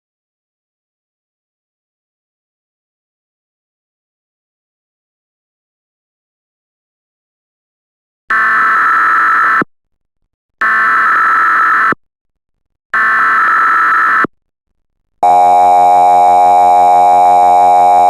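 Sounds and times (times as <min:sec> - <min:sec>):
buzzy digital data tones: 0:15.2 - 0:18.0
two-tone electronic alarm: 0:15.2 - 0:18.0.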